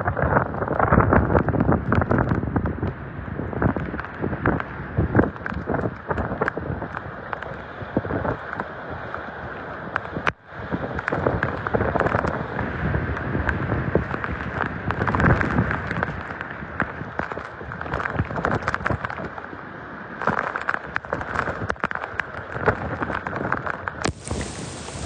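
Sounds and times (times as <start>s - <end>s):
raindrop impacts: 20.2s - 25.0s
heavy rain pouring: 20.3s - 25.0s.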